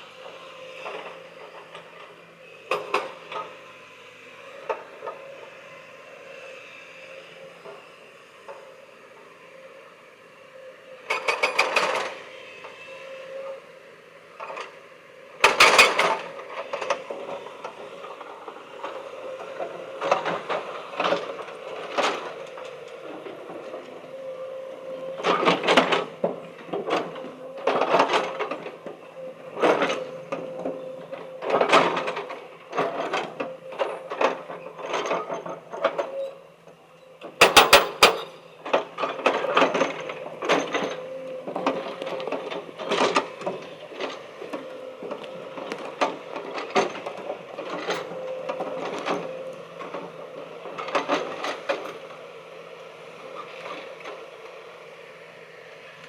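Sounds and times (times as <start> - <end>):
stone crusher humming: 37.4 - 38.4.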